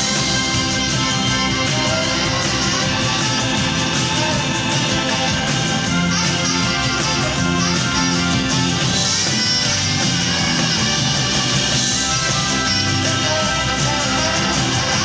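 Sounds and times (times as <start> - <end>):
live band playing: 0.0 - 15.0.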